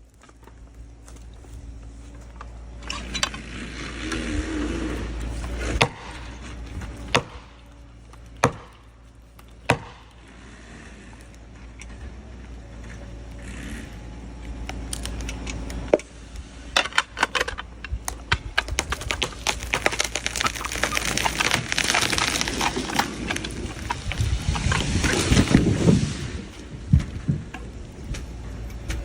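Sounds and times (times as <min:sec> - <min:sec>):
tree crashing through branches: 0:00.0 - 0:16.0, 0:16.6 - 0:29.0
tree wood cracking and snapping: 0:00.0 - 0:29.0
trunk hitting ground: 0:00.1 - 0:10.4, 0:16.7 - 0:29.0.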